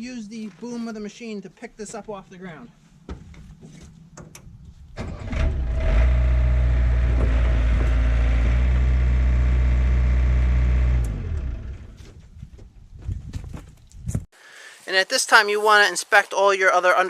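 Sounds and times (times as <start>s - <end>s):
excavator diesel engine revving: 5.0s - 12.0s.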